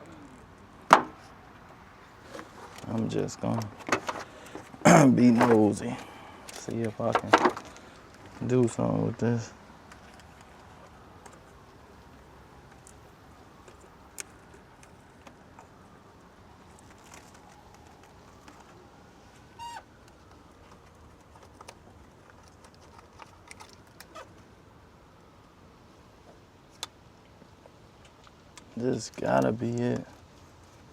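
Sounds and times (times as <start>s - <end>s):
short squeak: 19.6s - 19.8s.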